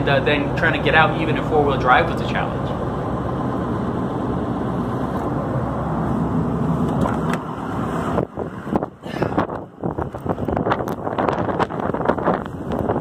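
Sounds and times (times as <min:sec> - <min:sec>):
vehicle driving rumble: 0:00.0 - 0:13.0
wind gusts on microphone: 0:02.7 - 0:13.0.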